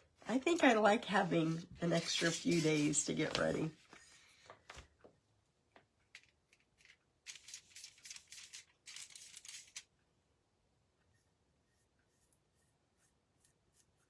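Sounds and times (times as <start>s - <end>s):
paintbrush scratching on surface: 0.6s - 3.1s, 11.1s - 14.0s.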